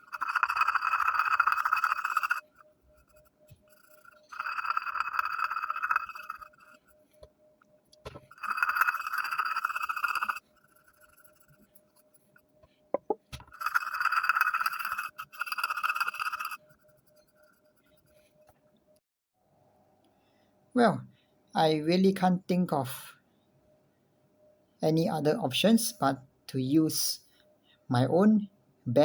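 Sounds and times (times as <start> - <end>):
fingernail scraping metal case: 3.1 - 6.9, 8.1 - 11.6.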